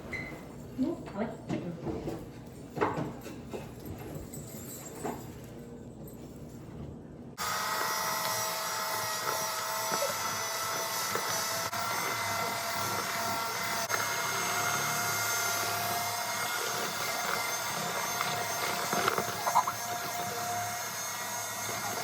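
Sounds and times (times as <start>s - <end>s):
electric mixer motor whine: 7.4s - 22.0s.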